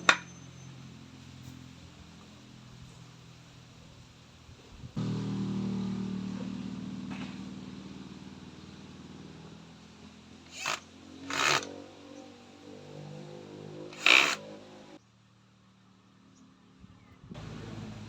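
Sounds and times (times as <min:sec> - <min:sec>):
motor engine running: 0:04.9 - 0:15.0, 0:17.4 - 0:18.0
short rasping noises: 0:10.5 - 0:11.7, 0:13.9 - 0:14.4.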